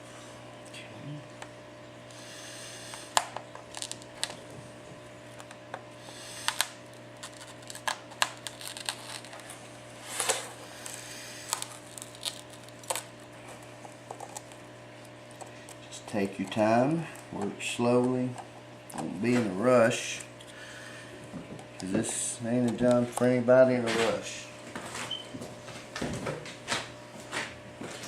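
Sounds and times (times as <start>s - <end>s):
glass being pried and peeled: 6.5s - 9.5s.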